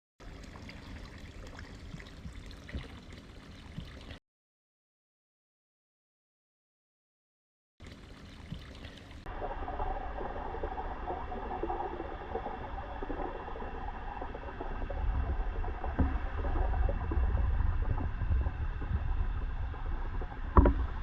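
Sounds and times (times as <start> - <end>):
running water splashing: 7.8 - 21.0.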